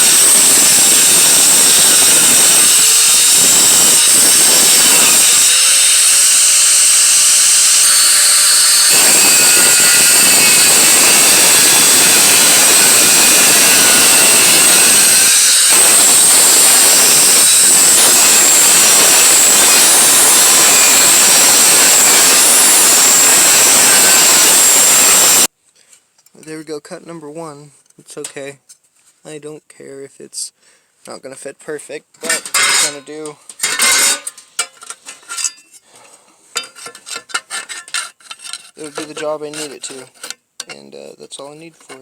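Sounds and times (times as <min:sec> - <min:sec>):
power tool cutting sheet metal: 0:00.0 - 0:25.5, 0:32.2 - 0:34.4.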